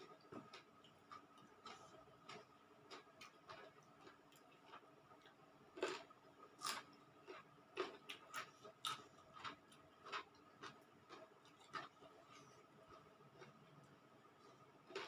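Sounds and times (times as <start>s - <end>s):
person chewing food: 0.0s - 15.0s.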